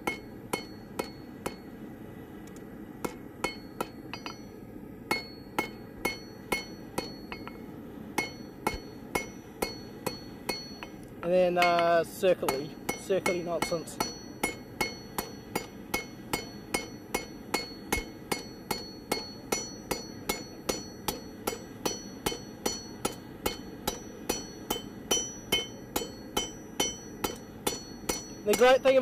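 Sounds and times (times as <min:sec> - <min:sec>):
hammer striking steel on anvil: 0:00.0 - 0:01.7, 0:03.0 - 0:29.0.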